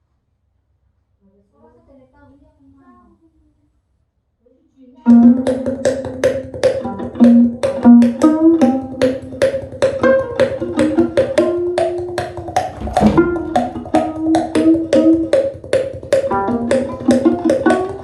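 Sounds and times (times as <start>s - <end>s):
music from speaker: 5.1s - 18.0s.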